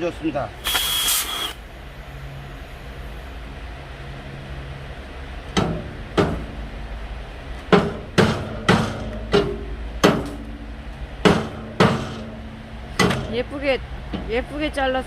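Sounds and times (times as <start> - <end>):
hammer striking steel stove: 5.5 - 6.6, 7.7 - 13.4.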